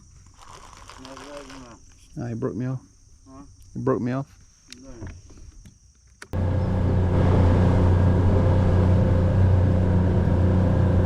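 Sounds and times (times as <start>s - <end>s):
faint insect chirping: 0.0s - 6.4s
outboard motor running: 6.4s - 11.0s.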